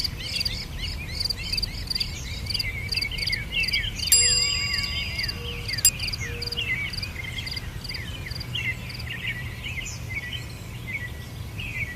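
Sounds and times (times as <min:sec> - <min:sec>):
birds chirping: 0:02.7 - 0:10.0.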